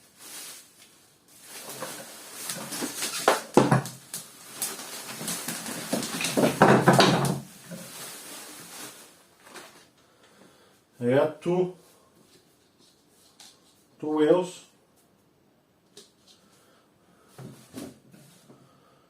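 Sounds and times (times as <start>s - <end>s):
rustling: 0.0s - 10.0s
wooden pieces knocking: 3.2s - 4.1s, 5.0s - 7.5s.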